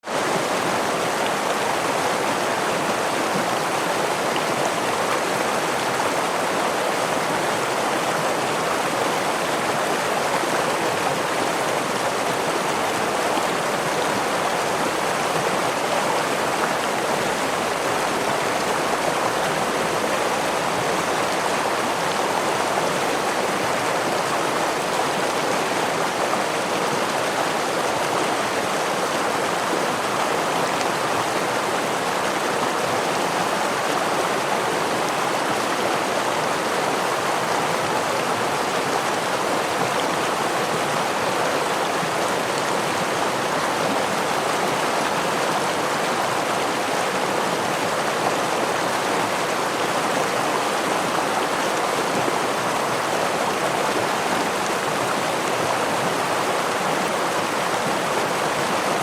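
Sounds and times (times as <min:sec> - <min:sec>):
stream water over rocks: 0:00.0 - 0:59.0.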